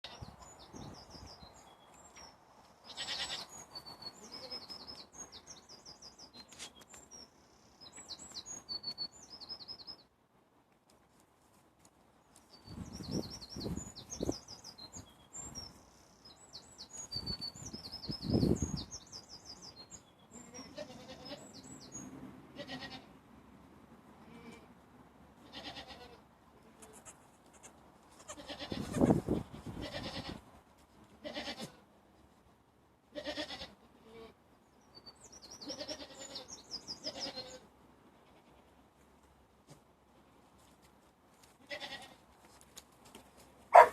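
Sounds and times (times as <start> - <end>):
small birds chirping: 0.0 - 10.1, 12.2 - 22.1, 34.6 - 37.6
goat kids bleating: 2.9 - 3.6, 20.3 - 21.5, 22.6 - 23.1, 25.4 - 30.4, 31.2 - 31.9, 33.1 - 34.4, 35.6 - 37.6, 41.6 - 42.2.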